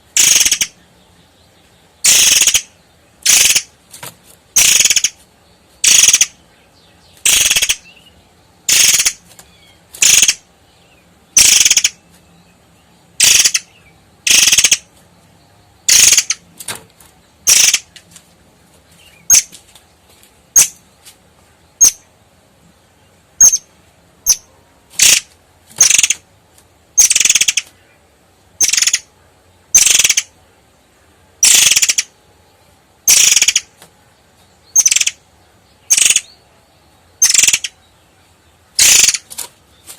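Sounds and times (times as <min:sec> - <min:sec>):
bird giving sharp high calls: 0:00.1 - 0:00.8, 0:02.0 - 0:03.7, 0:04.6 - 0:05.2, 0:05.8 - 0:06.4, 0:07.2 - 0:08.1, 0:08.7 - 0:10.5, 0:11.4 - 0:12.0, 0:13.2 - 0:14.9, 0:15.8 - 0:16.4, 0:17.4 - 0:17.9, 0:23.4 - 0:26.2, 0:27.0 - 0:27.8, 0:28.6 - 0:29.1, 0:29.7 - 0:30.4, 0:31.4 - 0:32.2, 0:33.0 - 0:33.8, 0:34.7 - 0:35.2, 0:35.8 - 0:36.4, 0:37.2 - 0:37.8, 0:38.8 - 0:39.3.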